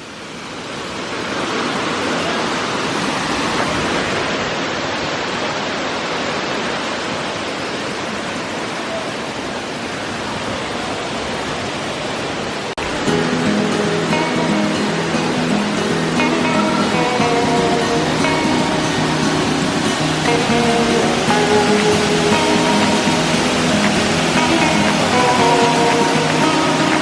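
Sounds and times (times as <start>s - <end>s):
waterfall rushing: 0.0s - 27.0s
guitar music: 12.8s - 27.0s.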